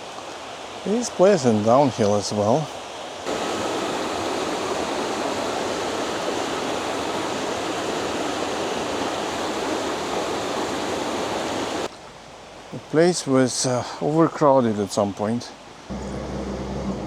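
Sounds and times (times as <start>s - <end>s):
creek water rushing: 0.0s - 12.7s.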